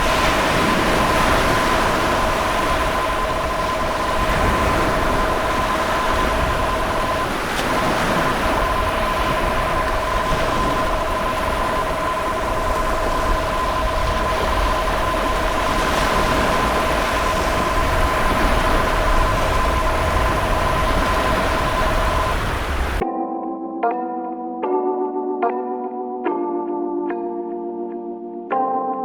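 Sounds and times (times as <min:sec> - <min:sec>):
two-tone alert signal: 0:00.0 - 0:23.0
waves roaring: 0:00.0 - 0:23.0.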